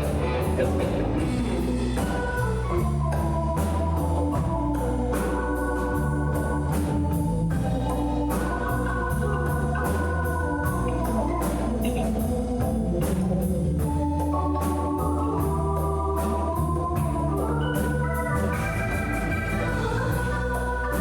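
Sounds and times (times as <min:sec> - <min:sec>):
drums keeping a beat: 0:00.0 - 0:21.0
organ keyboard chords: 0:00.0 - 0:21.0.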